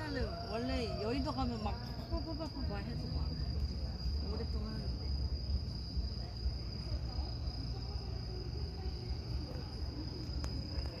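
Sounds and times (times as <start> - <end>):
insects chirring: 0.0 - 11.0
low outdoor rumble: 0.0 - 11.0.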